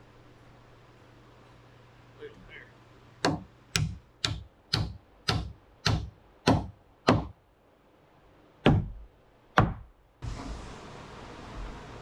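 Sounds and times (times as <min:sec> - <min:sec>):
hammer blows on wood framing: 0:03.2 - 0:07.4, 0:08.6 - 0:10.0.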